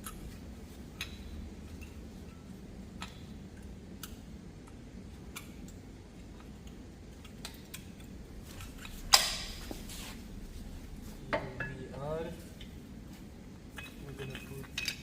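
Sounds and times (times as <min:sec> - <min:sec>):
metal clicks and taps: 0:03.0 - 0:03.3.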